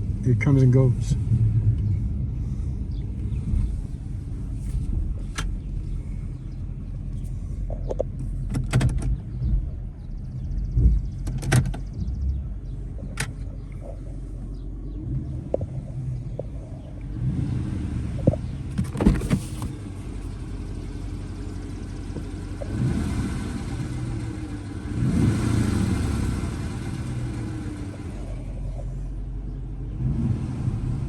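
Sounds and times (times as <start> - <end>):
engine ticking rattle: 0.0 - 17.3, 18.0 - 29.8
car engine revving: 0.0 - 29.0, 29.9 - 31.0
sharp engine knocks: 7.8 - 9.8.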